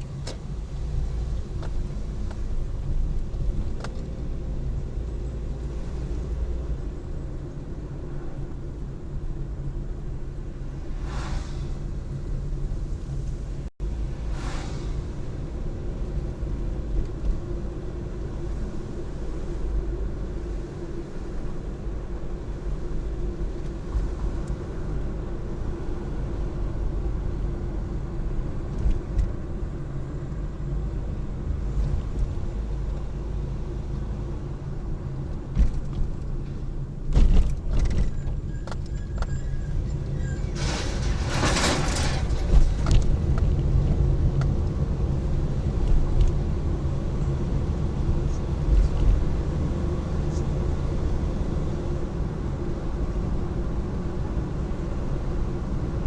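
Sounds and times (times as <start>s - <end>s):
car engine and road hum: 0.0s - 56.0s
rush of hiss: 14.3s - 15.3s.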